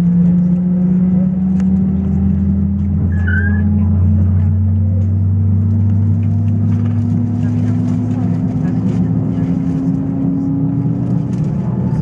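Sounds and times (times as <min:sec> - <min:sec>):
airplane cabin drone: 0:00.0 - 0:12.0
brief high squeak: 0:03.1 - 0:03.8.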